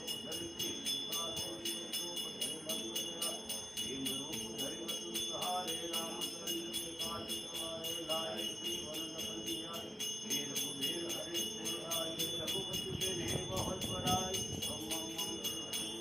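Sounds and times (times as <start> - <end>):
metal bells ringing: 0.0 - 16.0
rhythmic jingling: 0.0 - 16.0.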